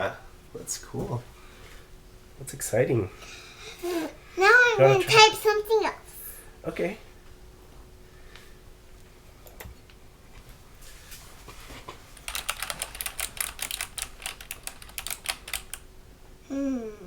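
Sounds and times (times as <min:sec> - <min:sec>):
mechanical keyboard key clacks: 0:12.2 - 0:15.8.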